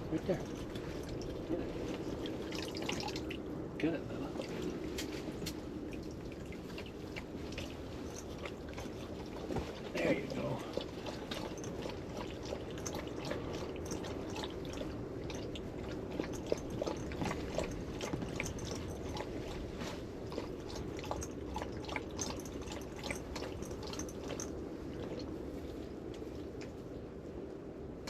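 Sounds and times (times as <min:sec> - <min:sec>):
dog lapping water: 0:00.0 - 0:25.4
steady low hum: 0:00.0 - 0:28.0.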